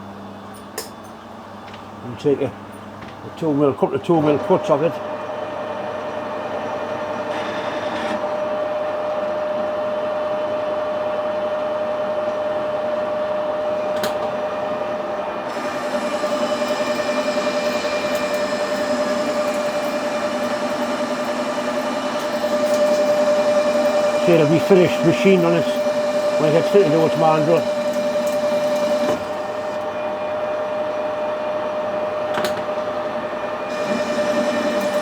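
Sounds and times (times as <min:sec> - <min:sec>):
metal lathe whining: 0:13.6 - 0:31.2, 0:33.3 - 0:35.0.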